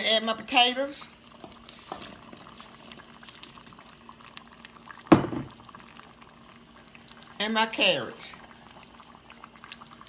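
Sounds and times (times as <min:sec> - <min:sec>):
pot bubbling with small pops: 0:00.0 - 0:10.0
loud knock of potatoes in pot: 0:05.1 - 0:05.6.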